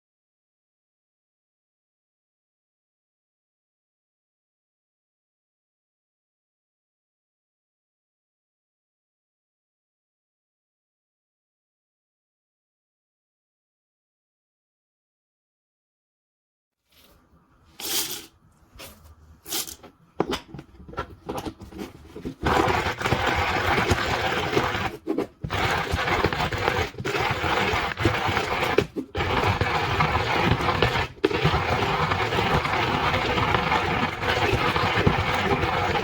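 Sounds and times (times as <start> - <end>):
hand coffee grinder grinding: 17.8 - 36.0.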